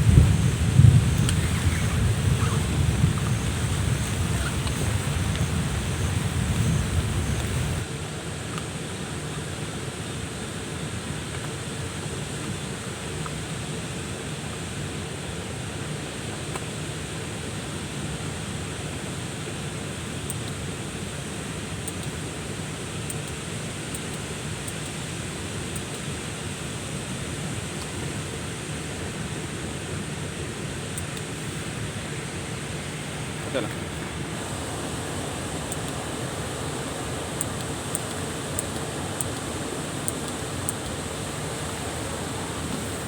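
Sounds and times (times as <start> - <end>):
water rushing: 0.0 - 7.9, 31.2 - 43.0
faint high ticks: 1.1 - 7.9, 34.4 - 43.0.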